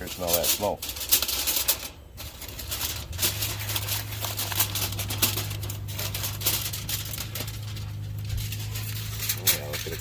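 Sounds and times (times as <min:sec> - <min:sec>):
aluminium foil crinkling: 0:00.0 - 0:10.0
low steady hum: 0:00.0 - 0:10.0.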